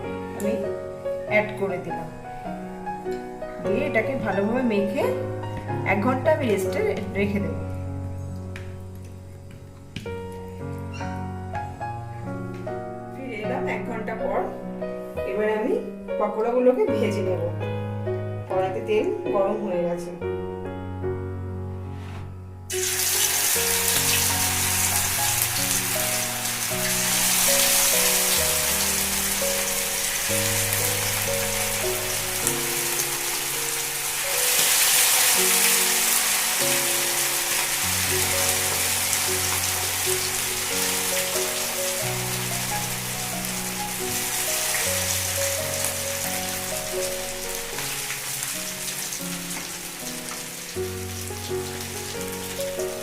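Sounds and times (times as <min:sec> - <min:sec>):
background music: 0:00.0 - 0:53.0
food frying in hot oil: 0:22.7 - 0:53.0.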